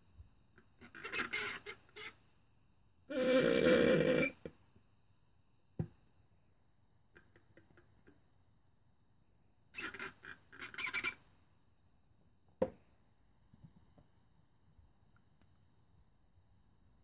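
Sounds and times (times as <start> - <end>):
steady high hiss: 0.0 - 17.0
straw squeaking in cup: 0.8 - 2.1, 3.1 - 4.5, 9.8 - 11.2.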